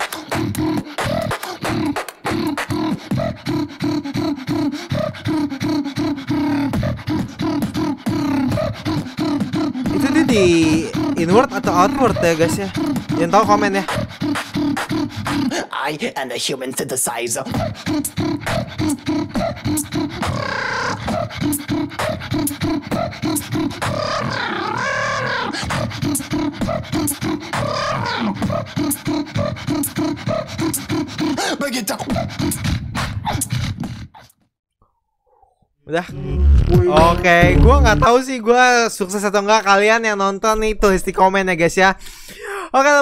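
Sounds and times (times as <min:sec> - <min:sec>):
synth-like vocal tones: 0:00.0 - 0:15.7, 0:17.4 - 0:31.1, 0:35.3 - 0:38.1
person beatboxing: 0:00.0 - 0:16.1, 0:16.8 - 0:34.4, 0:36.1 - 0:38.1.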